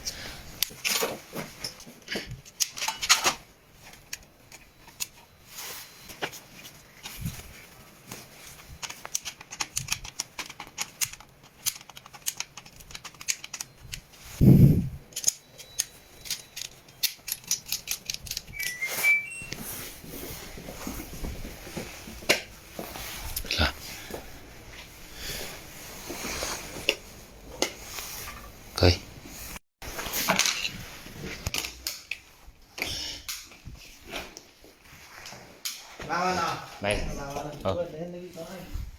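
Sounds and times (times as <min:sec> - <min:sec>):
short high chirps: 0:18.6 - 0:19.8.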